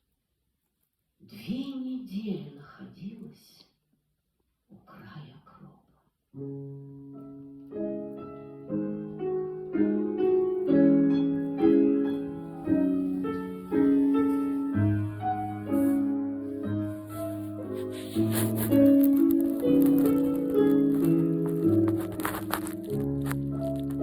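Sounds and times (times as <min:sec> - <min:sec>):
piano playing slow chords: 0:06.4 - 0:24.0.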